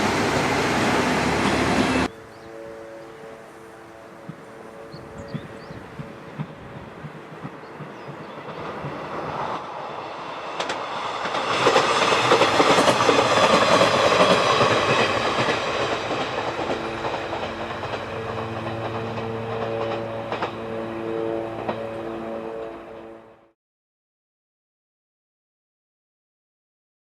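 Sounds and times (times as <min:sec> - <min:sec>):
train passing: 0:00.0 - 0:23.6
wheels clicking over rail joints: 0:10.4 - 0:20.8.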